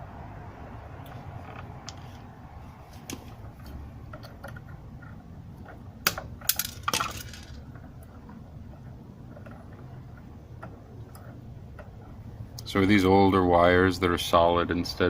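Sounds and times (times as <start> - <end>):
low steady hum: 0.0 - 15.0
clinking rattle of small parts: 6.4 - 7.6.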